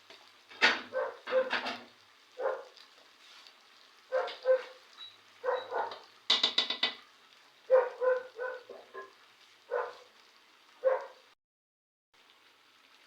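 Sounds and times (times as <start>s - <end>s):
dog barking: 0.8s - 1.7s, 2.4s - 2.8s, 4.1s - 4.8s, 5.4s - 6.1s, 7.7s - 10.1s, 10.8s - 11.3s
dog yelping: 0.9s - 1.6s, 2.4s - 2.8s, 4.1s - 6.1s, 7.7s - 10.1s, 10.8s - 11.2s.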